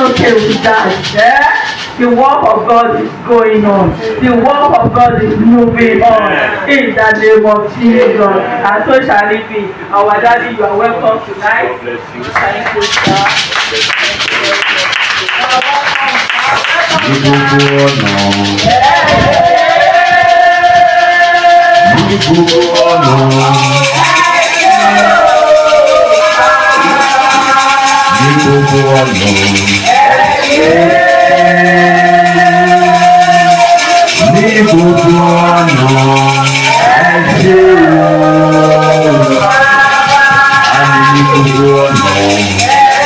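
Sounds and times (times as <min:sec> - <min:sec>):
people singing: 0:00.0 - 0:01.5, 0:16.7 - 0:43.0
shaker rhythm: 0:00.0 - 0:02.7, 0:12.3 - 0:43.0
live church praise music: 0:00.0 - 0:06.2, 0:12.6 - 0:43.0
held chords: 0:16.9 - 0:43.0.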